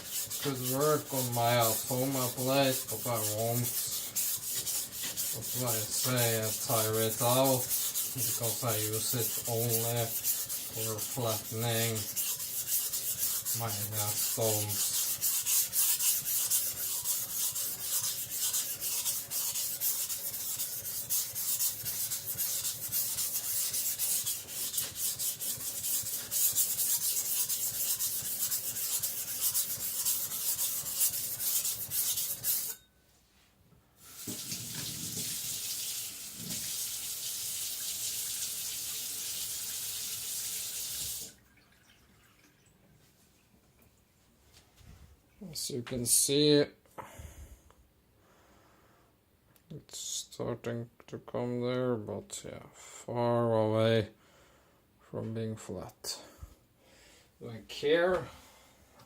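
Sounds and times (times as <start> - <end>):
blade grinding on whetstone: 0.0 - 32.8
water running: 34.0 - 43.0.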